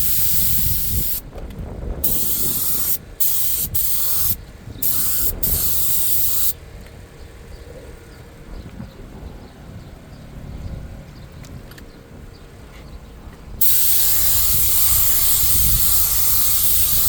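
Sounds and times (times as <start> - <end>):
air spray gun hissing: 0.0 - 1.2, 2.0 - 6.6, 13.6 - 17.0.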